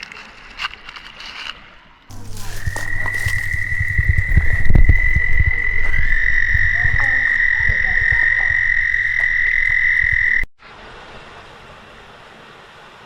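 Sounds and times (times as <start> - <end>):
thumps on microphone: 2.1 - 10.4
frogs trilling: 2.1 - 10.5.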